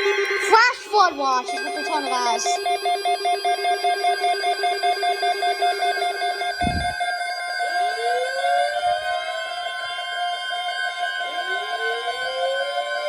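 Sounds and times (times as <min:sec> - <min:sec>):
pulsing two-pitch alert beep: 0:00.4 - 0:03.1, 0:06.4 - 0:07.2
tone sliding up in pitch: 0:06.5 - 0:07.0
low thump: 0:06.6 - 0:07.0.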